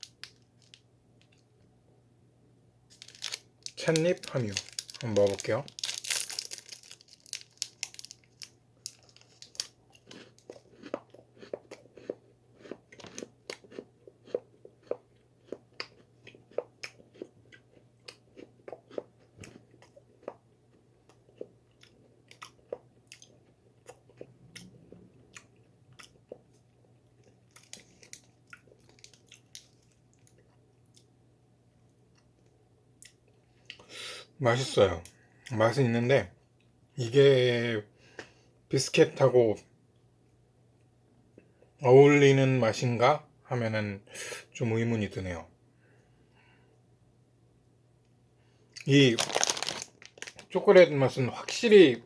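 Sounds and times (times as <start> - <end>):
biscuit crunching and chewing: 2.9 - 31.2, 48.8 - 50.6.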